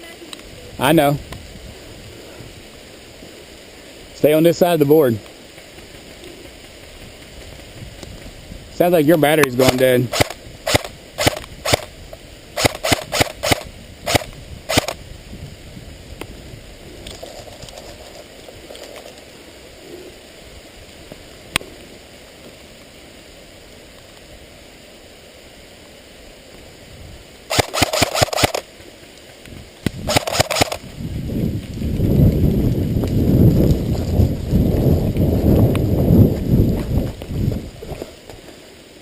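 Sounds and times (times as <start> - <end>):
airsoft guns firing: 9.6 - 11.9, 12.6 - 15.0, 27.5 - 28.7, 30.1 - 30.8.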